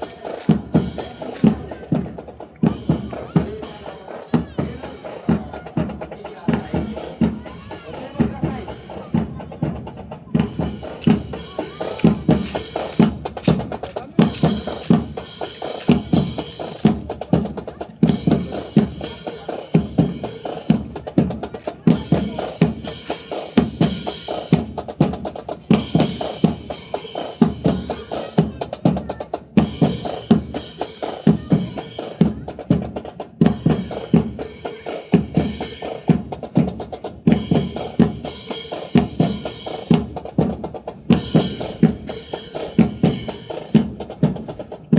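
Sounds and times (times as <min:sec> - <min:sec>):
snare and bass drum cadence: 0:00.0 - 0:44.9
drum rim clicks: 0:10.9 - 0:17.2.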